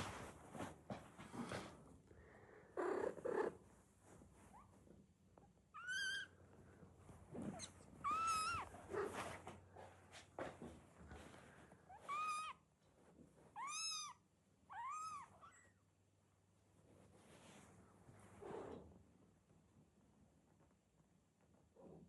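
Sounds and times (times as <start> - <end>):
kittens moving and snuffling: 0.0 - 14.1, 16.7 - 19.4.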